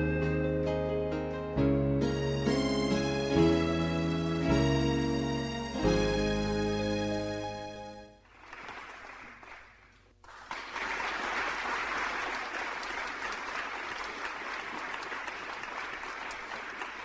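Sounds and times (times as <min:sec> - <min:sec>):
audience applause: 0:08.2 - 0:17.0.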